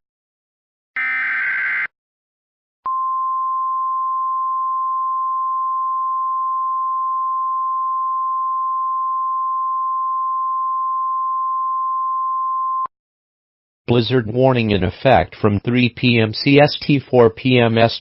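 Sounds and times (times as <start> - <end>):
buzzing data header: 1.0 - 1.9.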